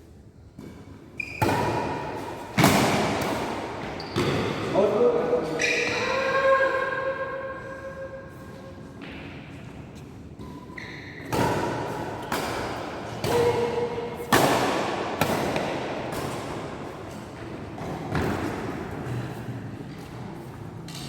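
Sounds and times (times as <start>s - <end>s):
shoe squeaks on court: 1.2s - 1.8s, 4.0s - 4.5s, 5.5s - 6.1s, 10.5s - 11.3s
racket striking shuttlecock: 11.2s - 17.1s.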